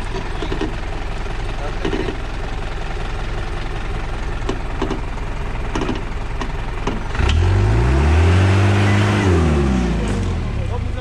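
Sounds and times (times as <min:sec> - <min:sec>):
knocks and clatters: 0:00.0 - 0:02.3, 0:04.3 - 0:07.4
off-road vehicle engine revving: 0:00.0 - 0:11.0.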